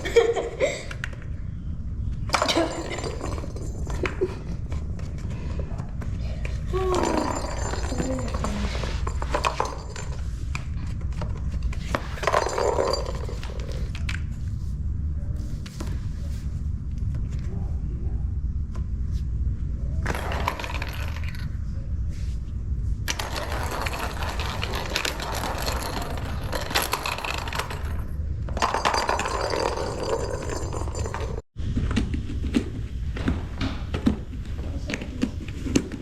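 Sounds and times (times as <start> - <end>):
plastic toy rattling and scraping: 23.1 - 31.4.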